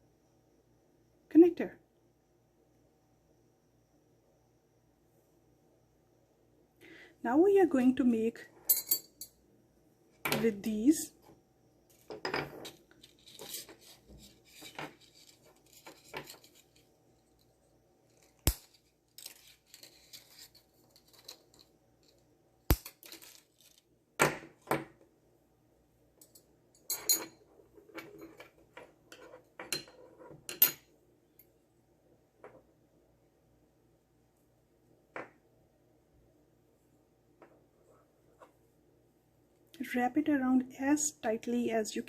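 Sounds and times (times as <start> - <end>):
wire snapping: 18.3 - 19.4, 22.7 - 23.1.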